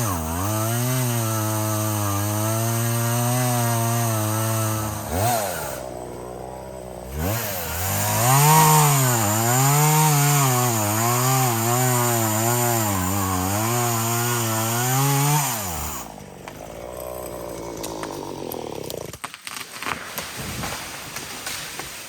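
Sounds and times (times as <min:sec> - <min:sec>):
chainsaw idling: 0:00.0 - 0:19.2
chainsaw cutting wood: 0:00.0 - 0:22.0.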